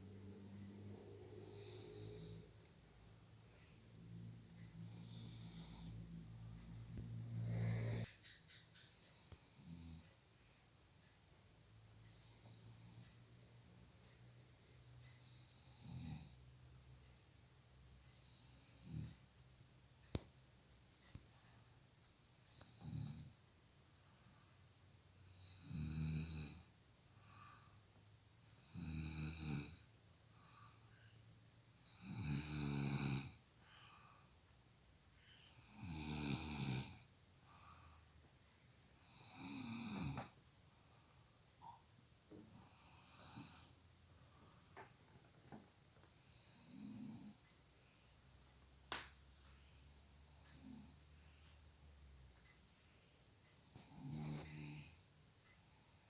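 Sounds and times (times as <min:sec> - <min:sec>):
person snoring faintly: 0:00.0 - 0:02.7, 0:04.0 - 0:08.2, 0:22.5 - 0:23.4, 0:31.8 - 0:34.1, 0:35.4 - 0:37.9, 0:39.0 - 0:40.4, 0:42.6 - 0:43.8, 0:46.3 - 0:47.4, 0:50.3 - 0:51.2, 0:53.7 - 0:55.2
insects trilling: 0:00.0 - 0:56.0
person snoring loudly: 0:00.3 - 0:02.5, 0:07.2 - 0:08.1, 0:25.4 - 0:26.7, 0:28.6 - 0:29.8, 0:31.9 - 0:33.4, 0:35.5 - 0:37.1, 0:39.1 - 0:40.3, 0:46.3 - 0:47.4, 0:53.8 - 0:55.0.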